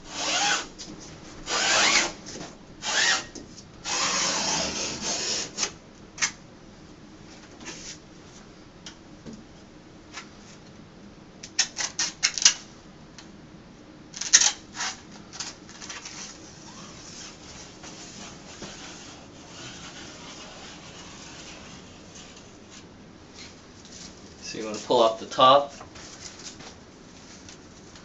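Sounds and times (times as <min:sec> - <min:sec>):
knife scratching through wallpaper: 0:00.1 - 0:00.7, 0:01.5 - 0:03.3, 0:03.9 - 0:05.7, 0:14.7 - 0:24.2.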